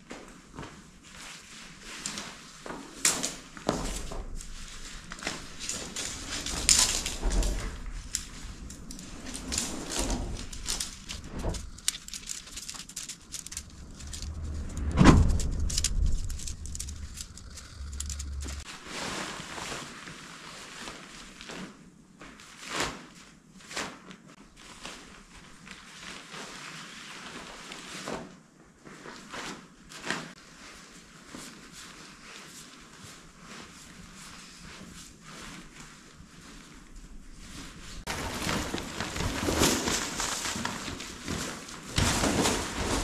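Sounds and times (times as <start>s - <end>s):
irregular clicks and rustles: 0.0s - 18.7s, 32.5s - 43.0s
low rumble: 3.8s - 18.7s
loud thump: 14.5s - 16.4s.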